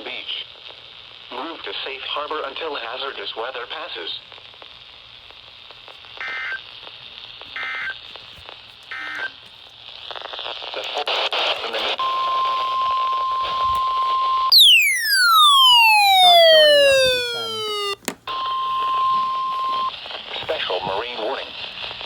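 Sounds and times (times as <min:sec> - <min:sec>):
radio static hiss: 0:00.0 - 0:22.0
falling siren-like wail: 0:14.5 - 0:18.0
steady alarm tone: 0:14.5 - 0:19.9
short data bursts: 0:14.5 - 0:20.0.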